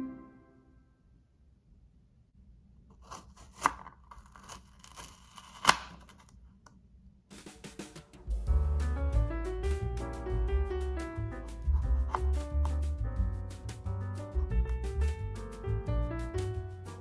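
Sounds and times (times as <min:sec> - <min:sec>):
background music: 0:00.0 - 0:00.8, 0:08.0 - 0:17.0.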